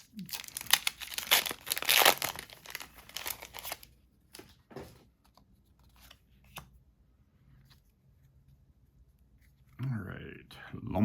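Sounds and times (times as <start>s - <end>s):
wrapper crinkling: 0.0s - 3.9s.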